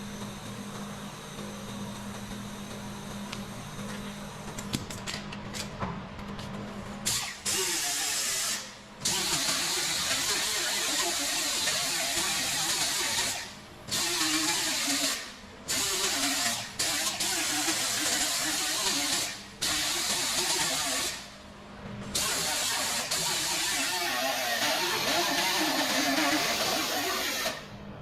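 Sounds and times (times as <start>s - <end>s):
power tool running harshly: 7.1s - 21.3s, 22.2s - 27.7s.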